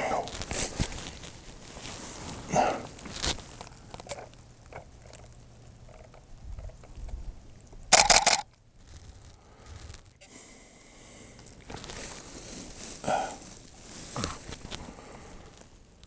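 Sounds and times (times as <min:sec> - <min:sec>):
grass rustling: 0:00.0 - 0:16.0
camera shutter clicks: 0:07.9 - 0:08.5.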